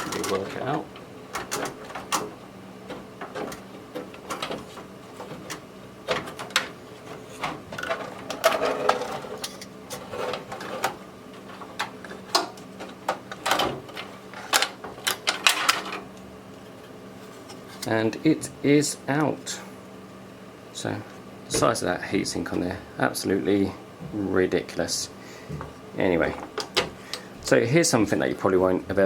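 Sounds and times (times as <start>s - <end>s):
clicks and rattles of computer parts: 0.0s - 16.8s, 26.2s - 27.2s
faint steady hum: 0.0s - 29.0s.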